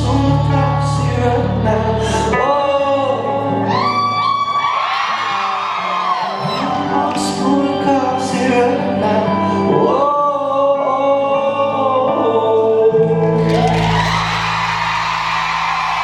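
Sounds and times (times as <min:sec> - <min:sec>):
crowd cheering: 0:03.7 - 0:07.1, 0:13.4 - 0:16.0.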